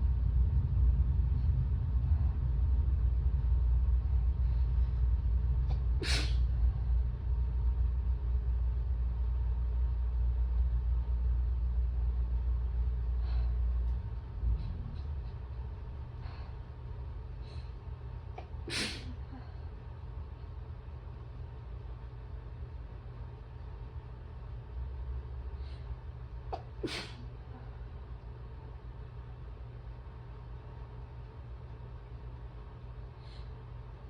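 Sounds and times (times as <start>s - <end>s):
steady low rumble: 0.0s - 34.0s
woman sneezing: 6.0s - 6.4s, 18.7s - 19.2s, 26.6s - 27.2s.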